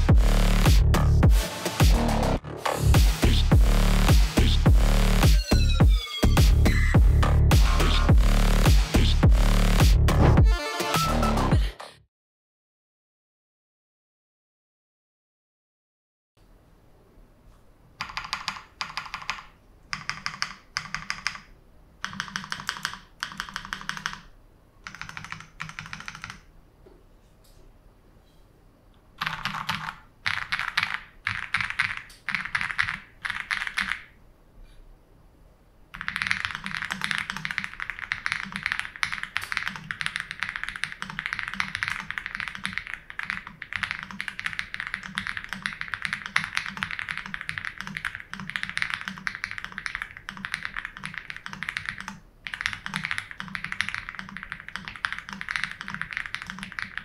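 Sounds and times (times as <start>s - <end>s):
typing on mechanical keyboard: 18.0s - 26.5s, 29.2s - 34.1s, 35.9s - 57.0s.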